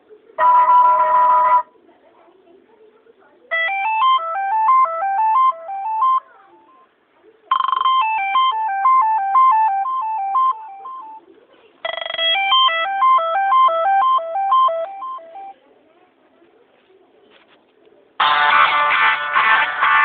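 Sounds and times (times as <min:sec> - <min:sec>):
phone ringtone melody: 0:00.4 - 0:01.7, 0:03.5 - 0:06.9, 0:07.5 - 0:11.2, 0:11.8 - 0:15.6, 0:18.2 - 0:20.0.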